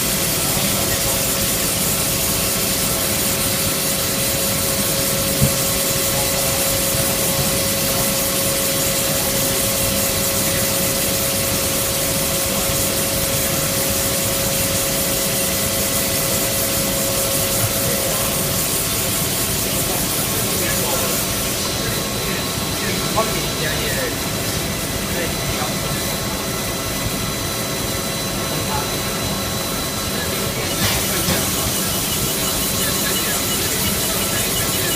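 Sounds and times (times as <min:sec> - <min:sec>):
steady tone: 0:28.7 - 0:34.9
grinder hissing: 0:30.3 - 0:34.9.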